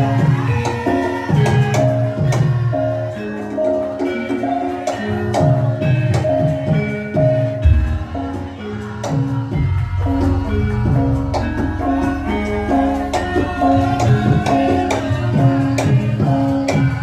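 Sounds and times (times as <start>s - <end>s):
struck metallophone notes: 0.0s - 17.0s
sharp drum strokes: 7.6s - 16.2s.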